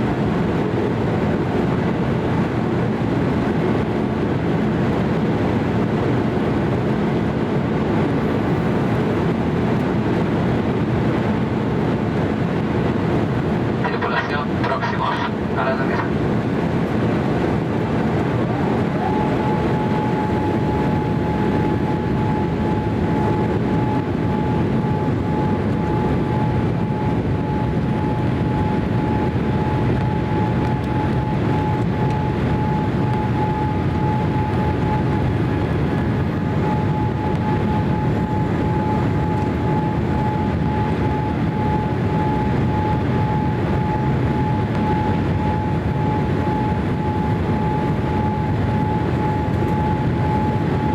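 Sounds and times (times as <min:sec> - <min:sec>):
airplane cabin noise: 0:00.0 - 0:50.9
high whine: 0:13.7 - 0:50.9.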